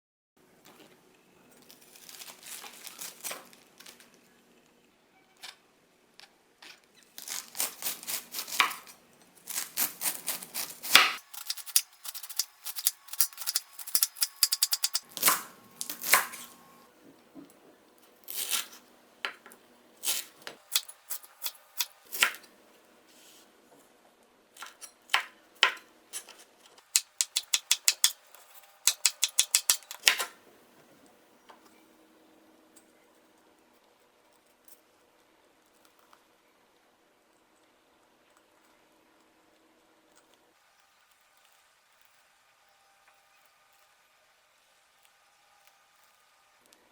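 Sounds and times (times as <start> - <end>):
knife slicing crisp vegetables: 7.2 - 16.8, 18.2 - 18.8, 20.0 - 23.5, 24.6 - 30.4.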